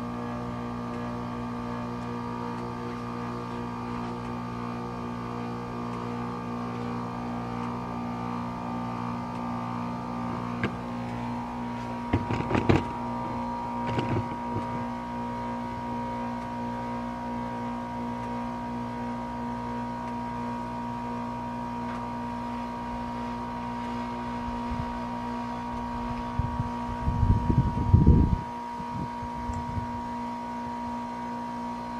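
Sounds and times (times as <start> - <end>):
heat pump compressor humming: 0.0 - 31.9
sharp clicks and knocks: 12.1 - 13.0, 13.8 - 14.8.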